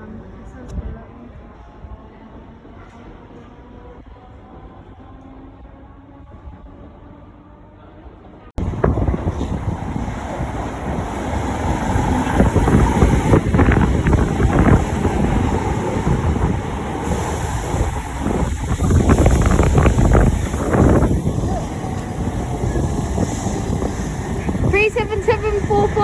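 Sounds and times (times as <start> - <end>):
electric train passing: 8.6 - 26.0
wind buffeting microphone: 8.6 - 26.0.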